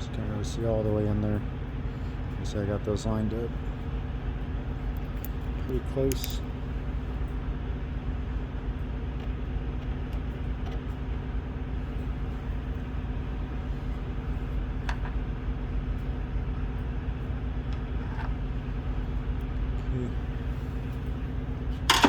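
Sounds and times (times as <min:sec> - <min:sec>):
engine humming: 0:01.0 - 0:22.0.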